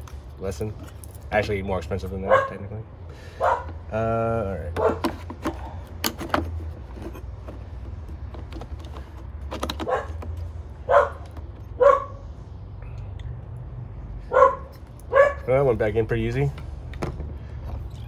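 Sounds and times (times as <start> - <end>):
dog barking: 2.3 - 2.6, 3.4 - 3.7, 9.9 - 10.2, 10.9 - 11.2, 11.8 - 12.2, 14.3 - 15.5.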